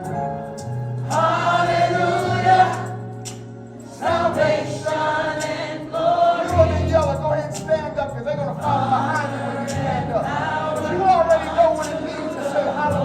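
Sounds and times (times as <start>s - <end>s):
gospel choir singing: 0.6s - 7.6s, 8.6s - 13.0s
steady bass: 6.5s - 13.0s.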